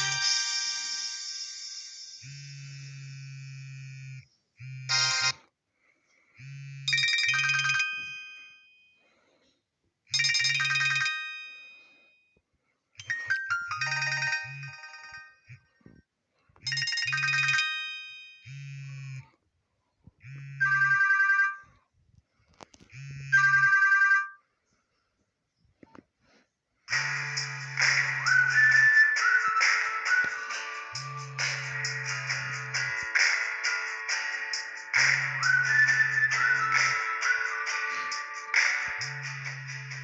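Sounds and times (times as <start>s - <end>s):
low buzz: 2.2s - 5.3s
phone ringtone chiming tones: 4.9s - 5.4s, 6.8s - 9.0s, 10.1s - 12.2s, 13.0s - 15.7s, 16.7s - 18.8s, 20.5s - 21.8s, 23.0s - 24.5s, 27.0s - 40.0s.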